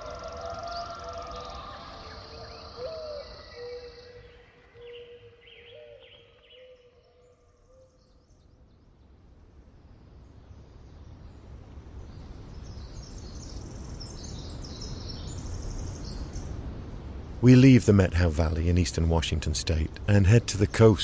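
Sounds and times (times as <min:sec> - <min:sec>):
faint birdsong: 0:00.0 - 0:21.0
low rumbling background: 0:15.4 - 0:21.0.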